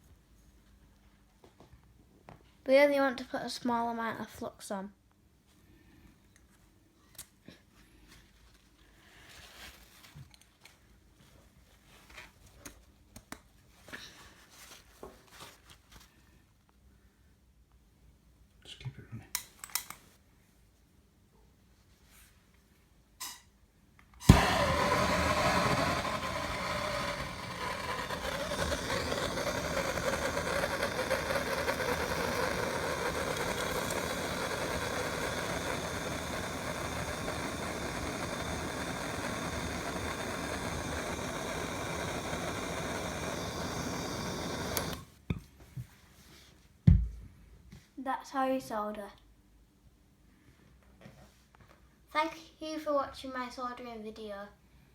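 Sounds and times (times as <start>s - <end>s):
torch flame hissing: 24.2s - 45.1s
gas torch lighting with a pop: 24.2s - 45.4s.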